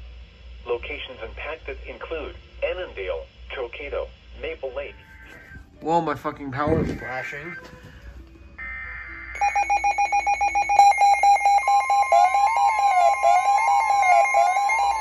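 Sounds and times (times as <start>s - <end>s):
steady high tone: 6.6s - 15.0s
warbling alert tone: 8.9s - 15.0s
rapid alert beeping: 9.4s - 15.0s.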